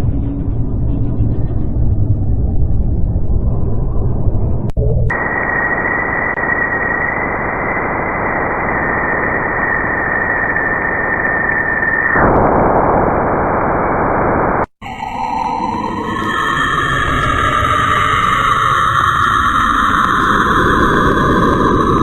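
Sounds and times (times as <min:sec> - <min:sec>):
eerie drawn-out tones: 0:00.0 - 0:22.0
static-like hiss: 0:04.8 - 0:15.0.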